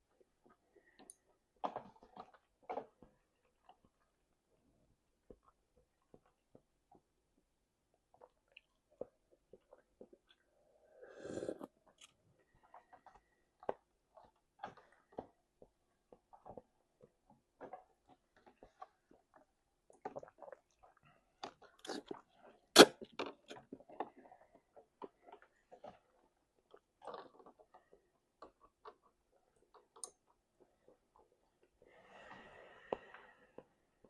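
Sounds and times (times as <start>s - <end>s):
person chewing food: 7.9s - 31.8s.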